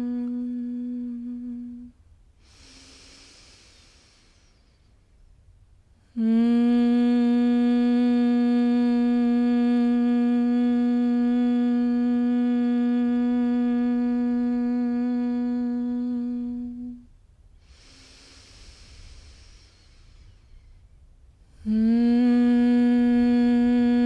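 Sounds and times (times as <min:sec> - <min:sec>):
woman humming steady note: 0:00.0 - 0:04.2, 0:06.0 - 0:17.1, 0:21.4 - 0:24.0
soft inhale through nose: 0:02.4 - 0:05.1, 0:17.6 - 0:21.0.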